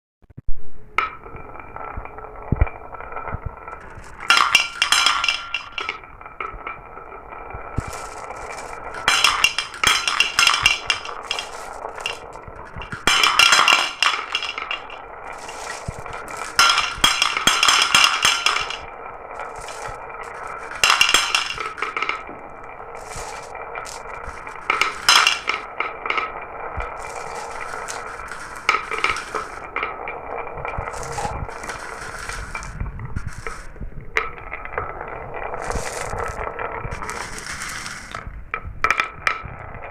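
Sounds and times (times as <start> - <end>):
marbles clinking and clattering: 0.8 - 39.9
marbles rolling down a track: 0.8 - 39.9.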